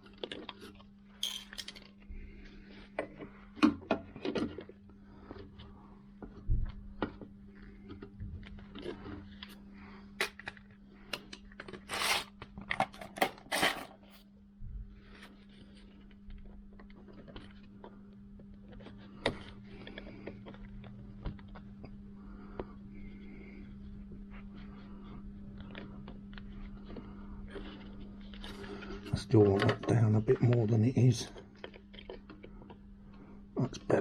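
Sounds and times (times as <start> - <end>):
steady low hum: 0.0 - 34.0
scraping rustles: 11.8 - 12.3, 13.1 - 14.2.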